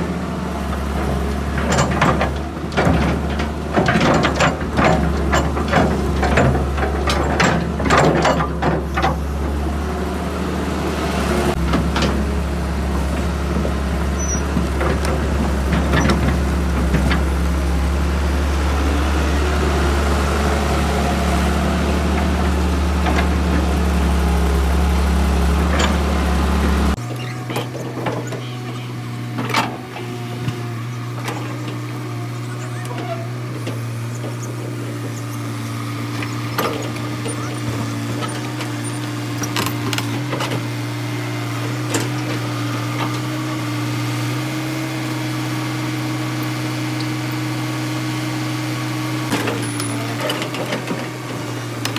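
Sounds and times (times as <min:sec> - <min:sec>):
excavator diesel engine running: 0:00.0 - 0:51.9
knocks and clanks: 0:00.9 - 0:09.6, 0:25.6 - 0:40.7.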